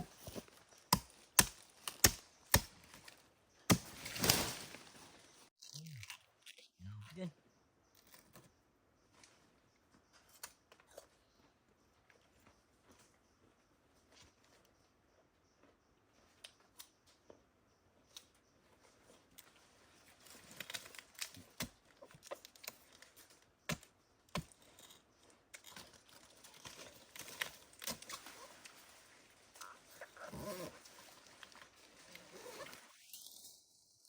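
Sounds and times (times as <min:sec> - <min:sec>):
plant fibres crackling and tearing: 0:05.6 - 0:06.7.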